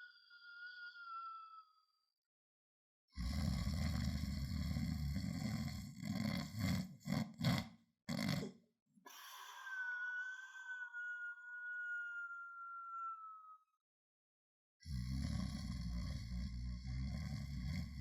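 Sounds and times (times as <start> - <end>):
whistling breath: 0.0 - 1.9, 9.1 - 13.8
person snoring: 3.2 - 8.5, 14.8 - 18.0
short snorts: 4.8 - 8.5.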